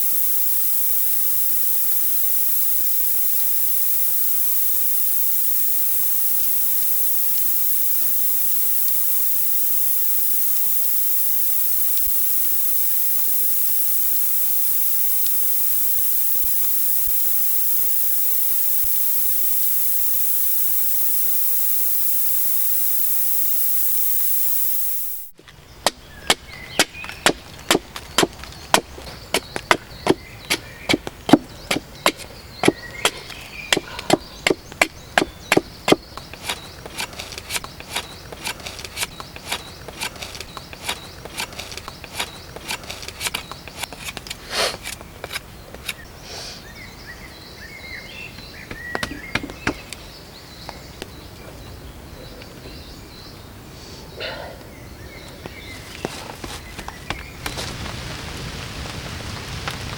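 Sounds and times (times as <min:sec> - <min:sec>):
loud steady hiss: 0:00.0 - 0:46.8, 0:56.2 - 0:59.9
chopping wood: 0:25.4 - 0:46.0, 0:48.7 - 0:49.9.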